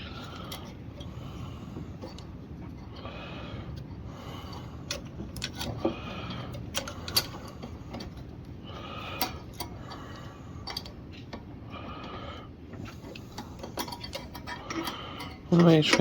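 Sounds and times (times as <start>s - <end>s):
metal engine parts clicking: 0.0s - 16.0s.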